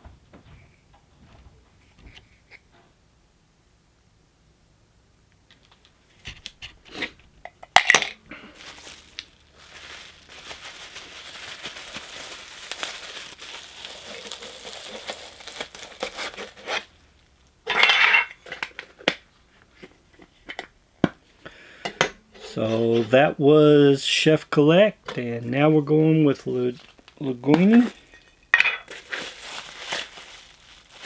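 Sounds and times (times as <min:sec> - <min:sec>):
packaging rustling and crinkling: 0:07.9 - 0:17.4, 0:26.7 - 0:31.0.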